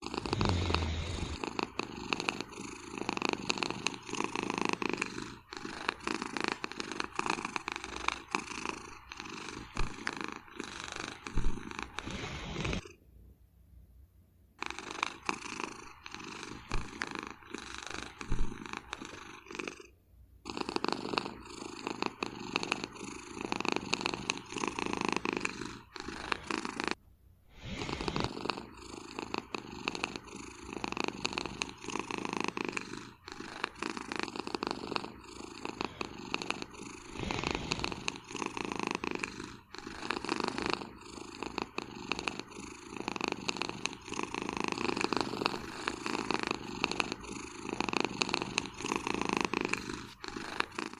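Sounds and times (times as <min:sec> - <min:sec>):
cat snoring: 0:00.0 - 0:13.0, 0:14.6 - 0:50.9.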